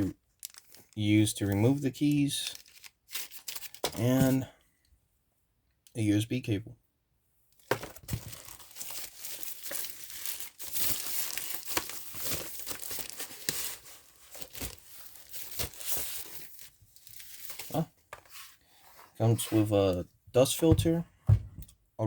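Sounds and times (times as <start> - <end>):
packaging crinkling and tearing: 0.3 - 4.4, 7.6 - 18.4.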